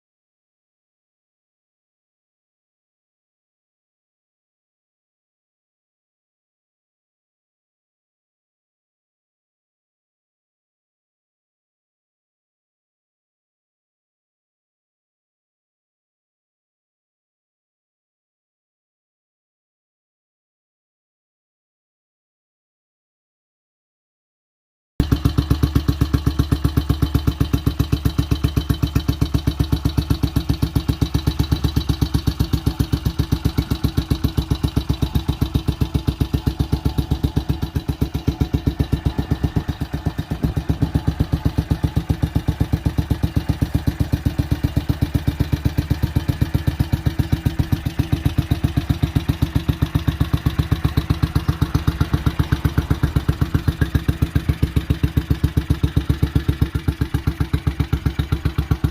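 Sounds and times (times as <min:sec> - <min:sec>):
motorcycle engine idling: 0:25.0 - 0:58.9.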